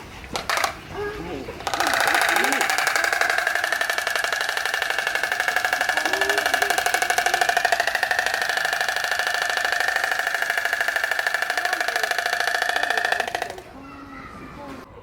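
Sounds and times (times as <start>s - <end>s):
stork bill-clattering rattle: 0.3s - 13.8s.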